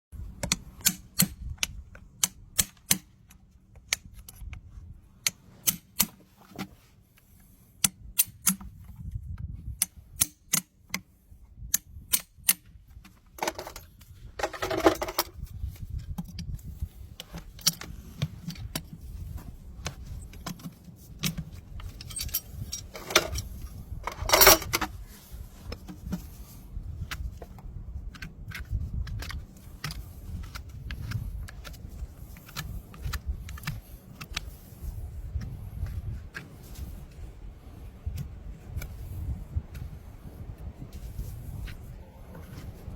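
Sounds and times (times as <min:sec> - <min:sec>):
hoof tool clicks and knocks: 0:00.4 - 0:04.6, 0:11.7 - 0:16.6, 0:17.2 - 0:25.0
tool scraping hoof: 0:13.4 - 0:15.4.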